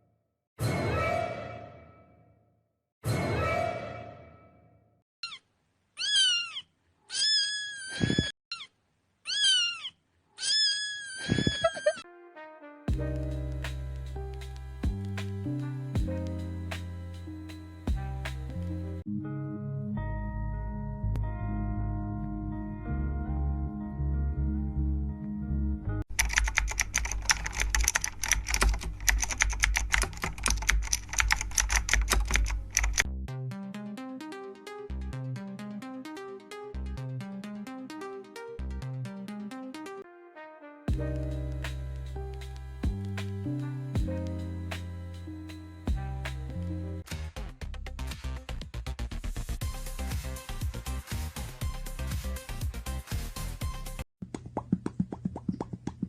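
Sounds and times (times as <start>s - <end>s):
cat meowing: 6.0s - 8.7s, 9.3s - 12.0s
bass-heavy music: 12.9s - 26.0s, 36.8s - 37.3s, 38.6s - 39.2s, 40.9s - 54.0s
fast keyboard typing: 26.1s - 33.1s.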